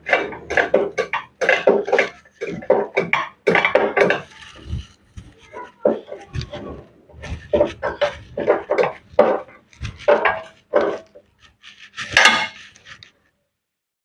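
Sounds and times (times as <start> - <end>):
metal tools clinking and clattering: 12.0 - 13.1.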